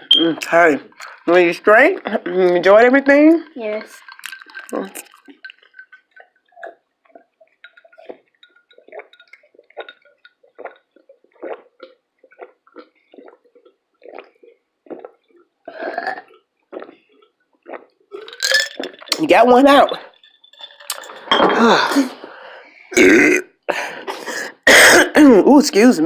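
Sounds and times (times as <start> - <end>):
wet mouth sounds: 0.1 - 1.3, 1.9 - 19.2.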